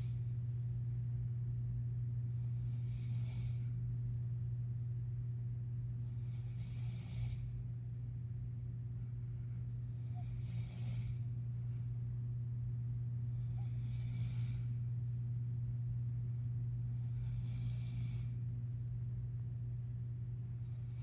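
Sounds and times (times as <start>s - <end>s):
steady low hum: 0.0s - 21.0s
man snoring: 2.5s - 3.7s, 6.1s - 7.6s, 10.0s - 11.3s, 13.4s - 14.7s, 17.0s - 18.4s.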